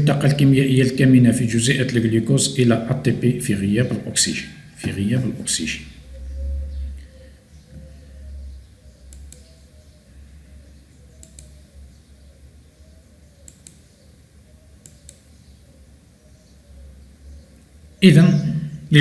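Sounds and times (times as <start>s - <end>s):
steady low hum: 0.0s - 19.0s
sharp double clicks: 9.1s - 9.6s, 11.2s - 11.6s, 13.4s - 13.9s, 14.8s - 15.4s.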